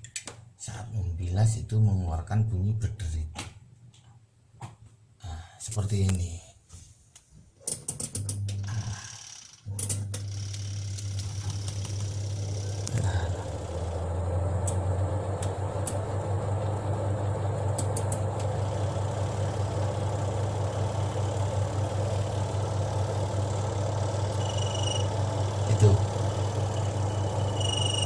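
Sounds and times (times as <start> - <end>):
spin dryer motor hum: 8.2 - 28.0.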